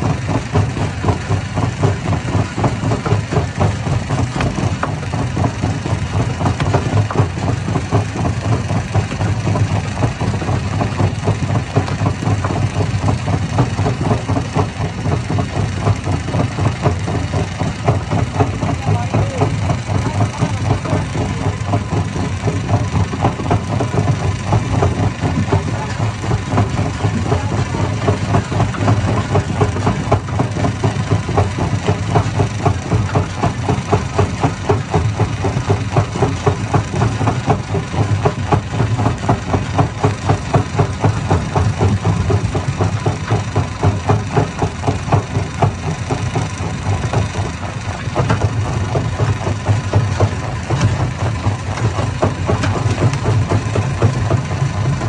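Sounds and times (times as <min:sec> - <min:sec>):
fast even knocking: 0:00.0 - 0:55.0
stone crusher drone: 0:00.0 - 0:55.0.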